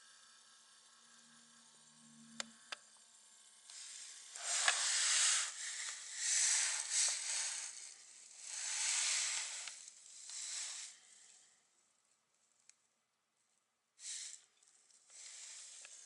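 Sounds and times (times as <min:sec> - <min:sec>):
animal hissing: 0:03.8 - 0:09.7, 0:10.3 - 0:11.0.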